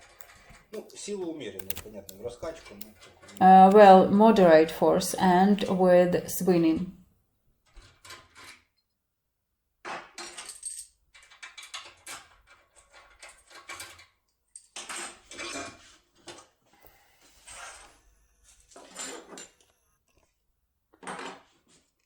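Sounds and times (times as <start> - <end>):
lock pick clicking and scraping in lock: 1.6 - 1.9.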